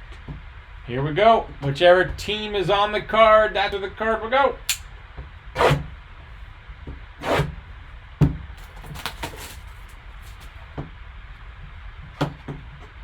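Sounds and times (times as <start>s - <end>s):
sharp click: 4.7s - 4.9s
cardboard packaging rustling: 8.6s - 10.6s.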